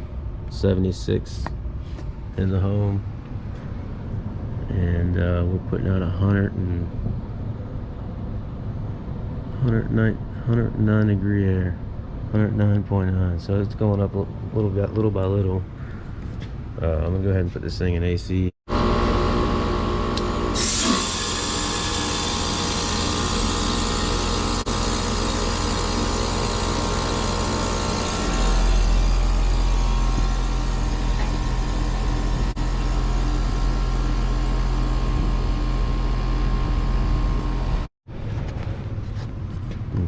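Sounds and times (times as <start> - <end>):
heat pump humming: 18.7 - 37.9
loud rushing hiss: 20.2 - 32.6.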